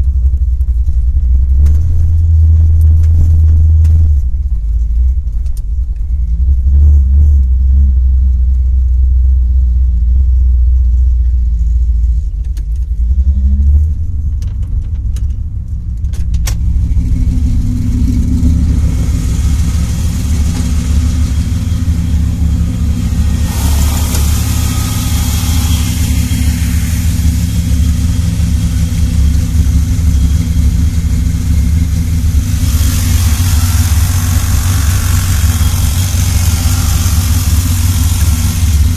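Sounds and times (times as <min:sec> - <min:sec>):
engine rumbling and idling roughly: 0:00.0 - 0:38.9
hiss: 0:18.5 - 0:38.9.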